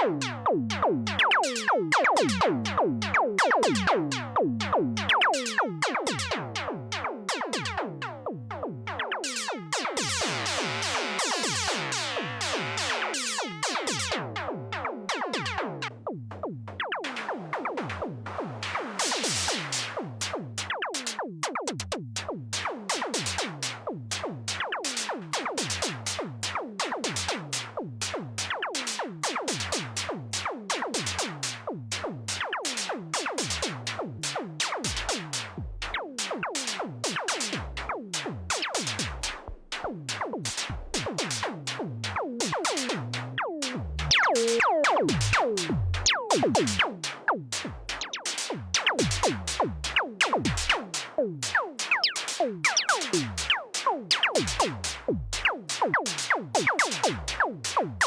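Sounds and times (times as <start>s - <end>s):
drum synthesizer percussion hits: 0.2s - 7.8s, 33.4s - 58.0s
pulsing bass note: 43.2s - 46.8s.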